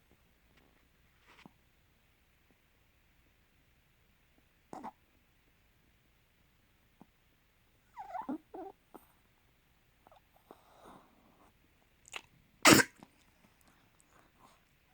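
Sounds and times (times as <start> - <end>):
soft breath: 10.4 - 11.6.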